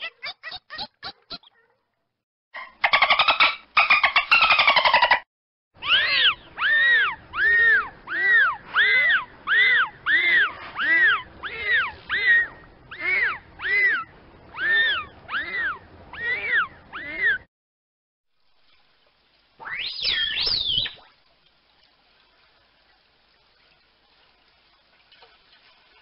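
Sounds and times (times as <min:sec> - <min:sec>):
dolphin whistles: 0:19.6 - 0:21.0.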